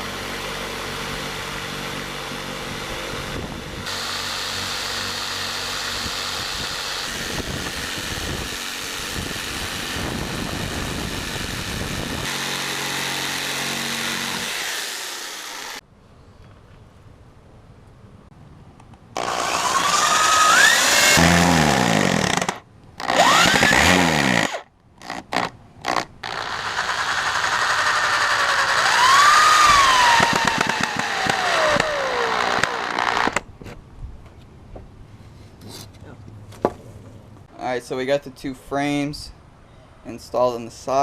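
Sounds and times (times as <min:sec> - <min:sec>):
power saw cutting wood: 0:00.0 - 0:15.8, 0:19.2 - 0:33.5.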